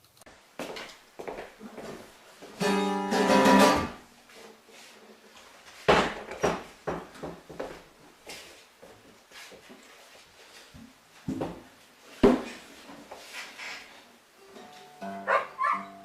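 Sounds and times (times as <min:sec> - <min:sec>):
guitar plucked and strummed: 0:02.6 - 0:04.0, 0:14.4 - 0:16.0.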